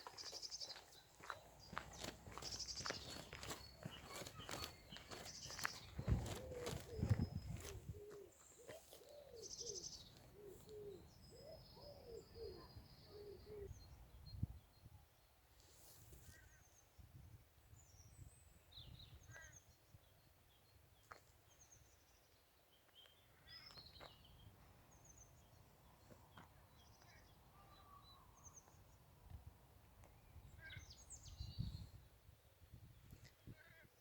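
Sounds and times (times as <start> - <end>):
small birds chirping: 0.0 - 14.8.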